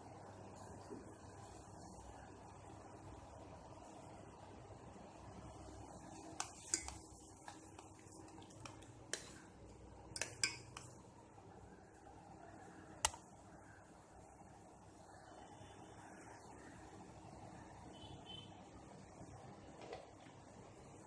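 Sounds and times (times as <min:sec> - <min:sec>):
kitchen utensils and dishes clinking: 0:06.4 - 0:07.2, 0:10.2 - 0:11.0.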